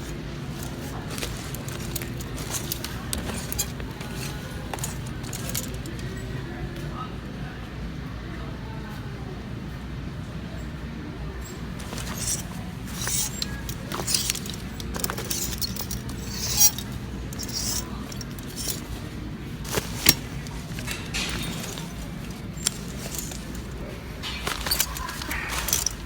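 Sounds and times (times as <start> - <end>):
metal hangers clinking on racks: 0.0 - 6.2, 11.6 - 26.0
steady store hum: 0.0 - 7.1, 11.2 - 26.0.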